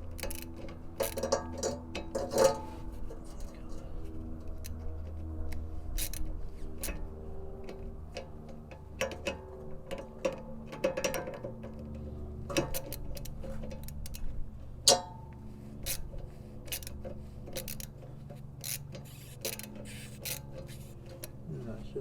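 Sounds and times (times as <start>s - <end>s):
ratchet clicking: 0.0s - 2.6s, 5.5s - 7.0s, 9.0s - 14.3s, 15.8s - 21.4s.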